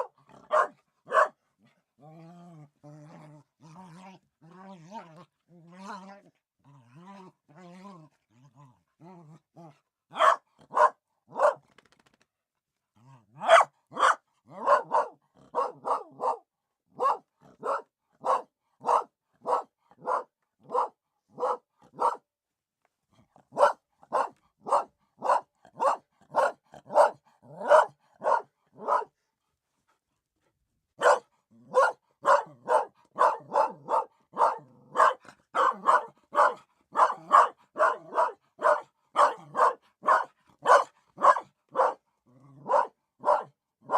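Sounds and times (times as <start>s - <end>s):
dogs barking: 0.0s - 1.4s, 10.1s - 11.6s, 13.4s - 16.4s, 17.0s - 22.2s, 23.5s - 29.1s, 31.0s - 42.0s, 42.6s - 43.9s.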